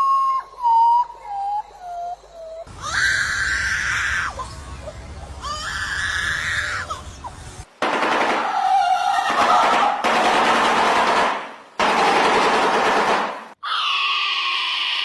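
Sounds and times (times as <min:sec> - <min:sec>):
bird screeching: 0:02.7 - 0:04.6, 0:13.6 - 0:15.0.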